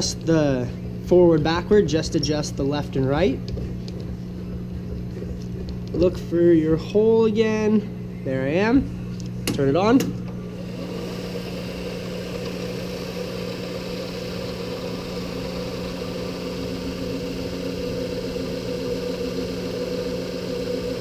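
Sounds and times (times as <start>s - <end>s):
drill press humming: 10.2s - 21.0s.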